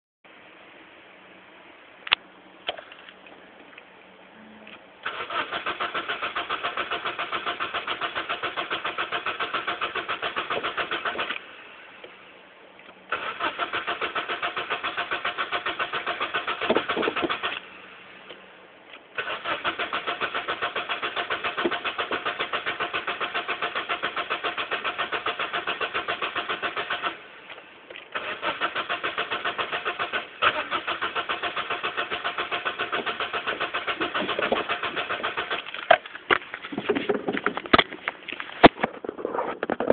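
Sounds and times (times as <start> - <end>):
engine cranking on starter motor: 5.0 - 11.5, 13.1 - 17.7, 19.1 - 27.3, 28.0 - 36.0.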